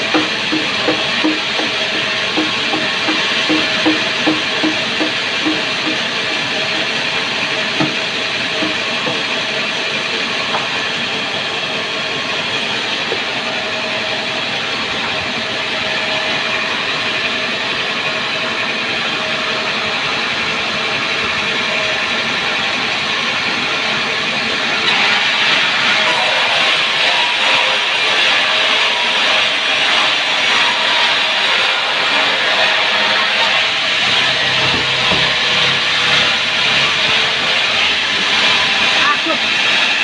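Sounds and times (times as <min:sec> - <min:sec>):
sawmill saw cutting log: 0:00.0 - 0:18.8, 0:19.4 - 0:40.0.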